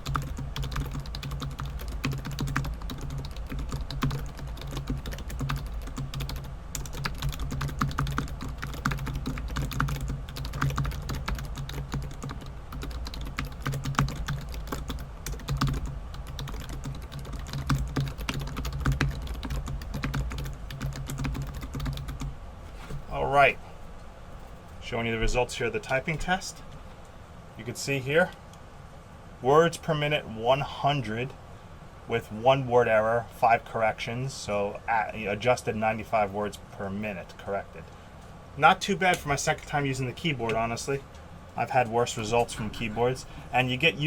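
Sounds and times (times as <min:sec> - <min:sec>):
steady low hum: 0:00.0 - 0:44.0.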